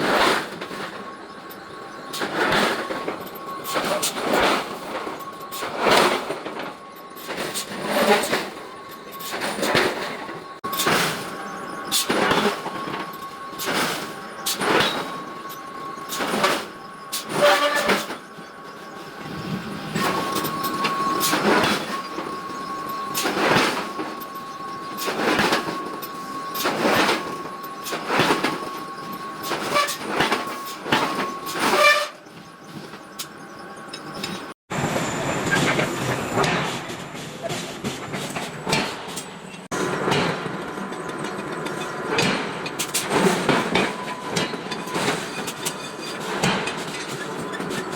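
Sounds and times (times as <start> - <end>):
high machine hum: 0.0 - 36.5.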